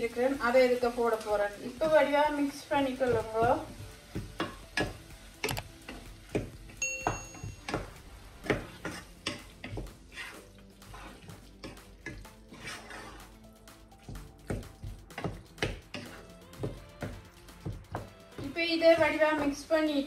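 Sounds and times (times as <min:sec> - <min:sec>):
utensil scraping a pot: 0:08.5 - 0:13.6, 0:15.1 - 0:16.5.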